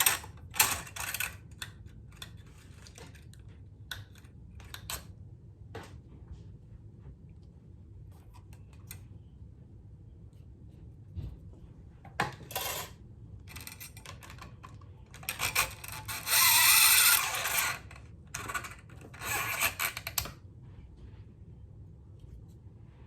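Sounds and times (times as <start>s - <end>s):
metal strings scraping and rattling: 15.2s - 20.3s.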